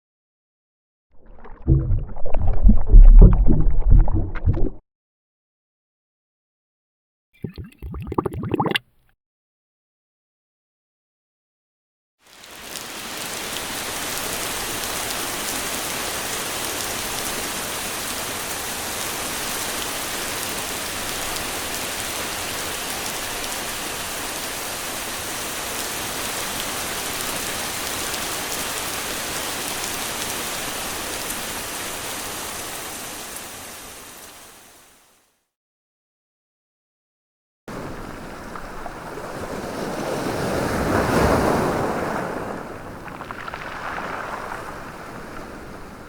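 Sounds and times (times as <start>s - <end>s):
steady rain: 12.3s - 35.0s.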